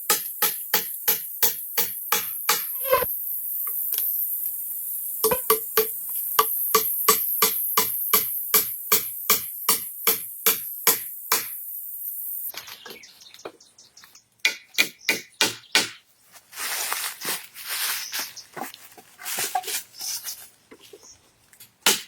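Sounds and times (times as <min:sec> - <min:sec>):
tool striking wood: 0:00.1 - 0:02.8, 0:05.2 - 0:11.6, 0:14.4 - 0:16.0
rustling: 0:16.3 - 0:21.5.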